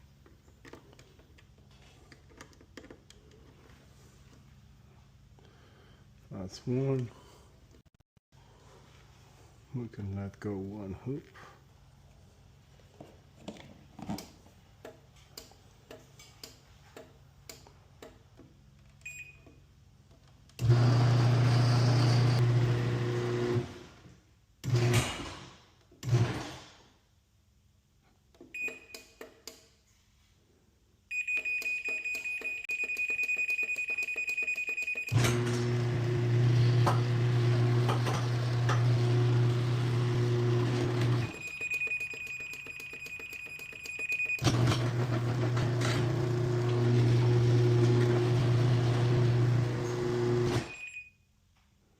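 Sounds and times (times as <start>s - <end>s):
garage door opener motor running: 20.6s - 25.2s, 35.1s - 41.8s, 44.4s - 50.8s.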